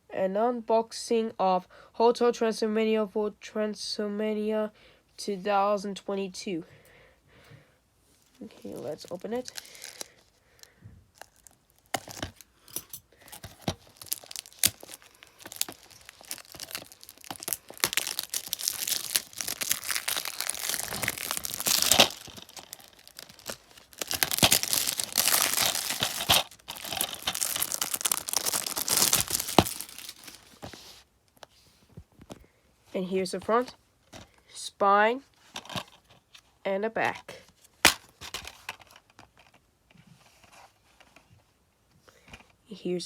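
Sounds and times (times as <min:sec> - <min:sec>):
plastic wrap tearing and crinkling: 0:08.3 - 0:12.5, 0:13.2 - 0:31.0.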